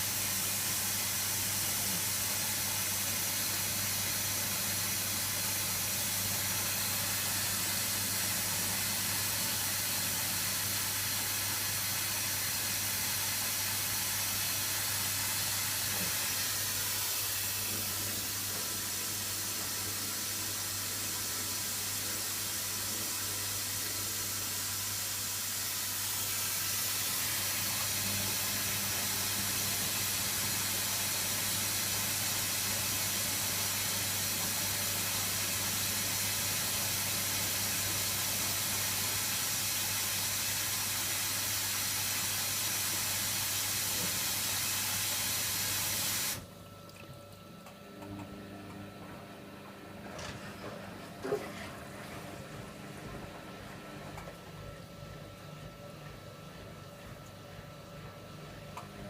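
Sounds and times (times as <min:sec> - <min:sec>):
washer dryer running: 0:00.0 - 0:59.0.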